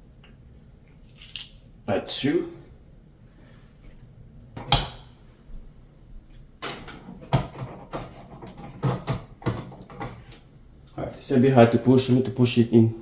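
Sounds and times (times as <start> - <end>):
cable scraping in wall opening: 6.6 - 10.5.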